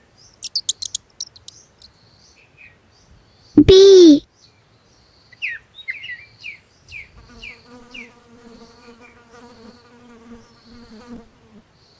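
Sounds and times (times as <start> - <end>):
bird chirping: 0.4 - 1.5.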